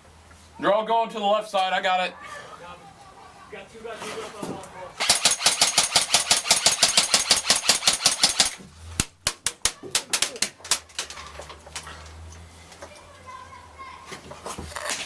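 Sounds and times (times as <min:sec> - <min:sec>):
airsoft gun full-auto burst: 0:05.0 - 0:08.6
airsoft gun single shots: 0:05.0 - 0:09.5.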